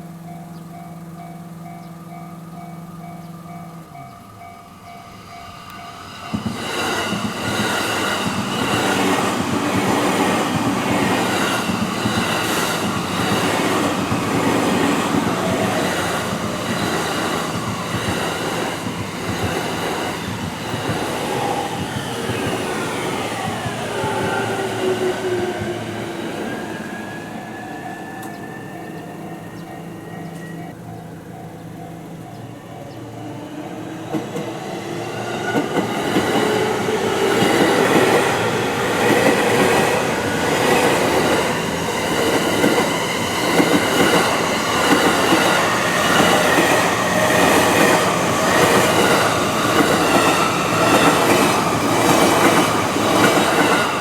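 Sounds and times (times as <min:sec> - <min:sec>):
crossing alarm bell ringing: 0:00.0 - 0:33.6
train wheels clattering over rail joints: 0:06.2 - 0:27.1.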